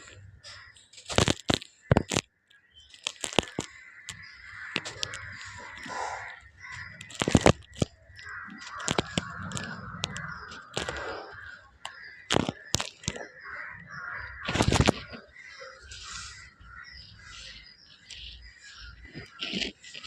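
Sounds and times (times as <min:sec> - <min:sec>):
sharp snapping cracks: 0:00.0 - 0:15.3
soil crumbling crunch: 0:00.0 - 0:20.0.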